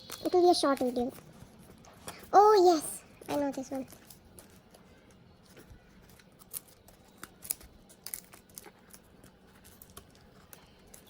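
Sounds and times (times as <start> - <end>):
parcel packaging clicks and rustles: 3.1 - 11.0.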